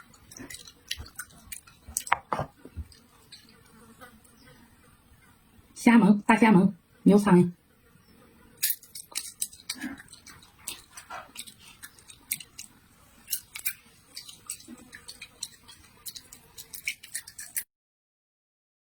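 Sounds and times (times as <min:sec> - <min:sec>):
chewing crisp food: 0:00.0 - 0:04.2, 0:08.6 - 0:17.7.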